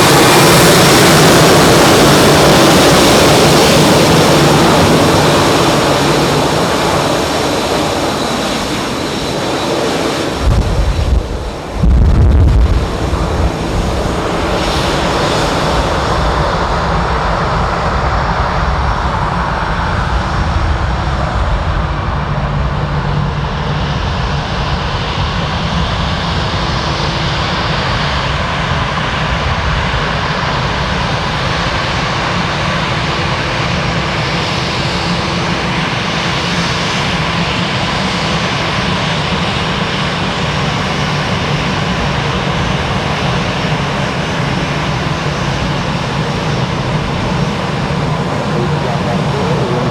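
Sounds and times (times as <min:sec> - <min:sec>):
jet engines roaring: 0:45.1 - 0:49.9.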